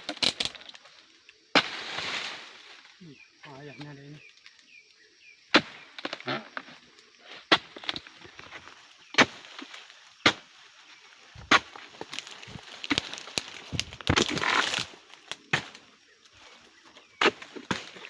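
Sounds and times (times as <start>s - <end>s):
chopping strikes into wood: 5.5s - 6.2s, 10.2s - 10.4s, 11.4s - 14.8s
rustling and crackling: 5.9s - 18.0s.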